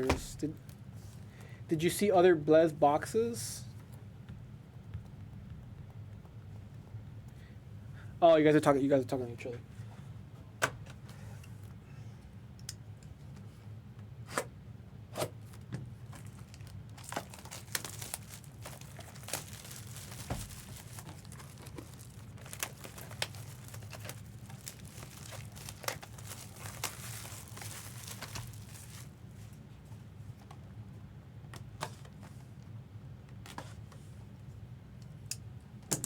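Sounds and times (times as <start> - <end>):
low steady hum: 0.0 - 36.0
card packaging tearing and crinkling: 16.1 - 29.2.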